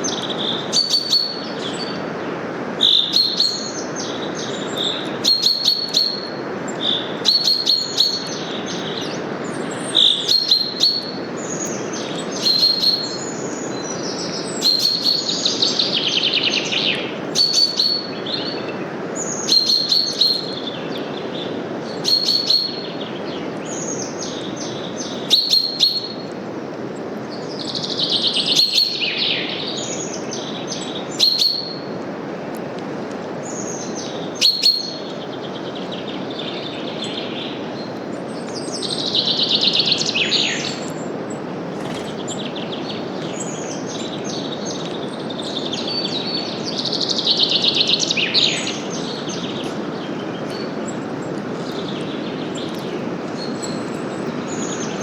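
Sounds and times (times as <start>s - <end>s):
birds chirping: 0.0s - 26.5s, 27.2s - 32.0s, 33.4s - 55.0s
wind through forest leaves: 0.0s - 55.0s
bird trilling: 0.1s - 2.0s, 2.8s - 8.9s, 9.9s - 11.2s, 12.4s - 13.3s, 14.6s - 15.3s, 17.4s - 18.6s, 19.4s - 20.8s, 22.0s - 22.9s, 25.3s - 26.2s, 28.4s - 29.5s, 31.2s - 31.9s, 34.4s - 35.0s.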